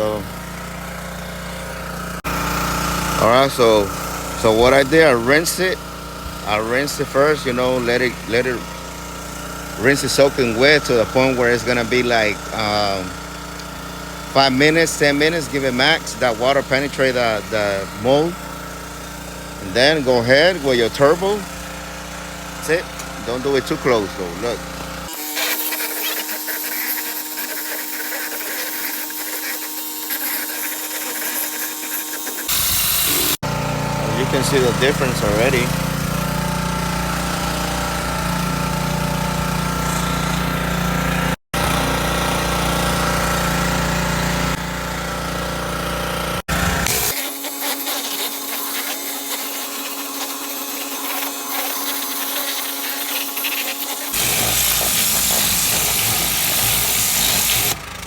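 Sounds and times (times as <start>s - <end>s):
pressure washer water jet hissing: 0.0s - 44.6s, 46.5s - 57.9s.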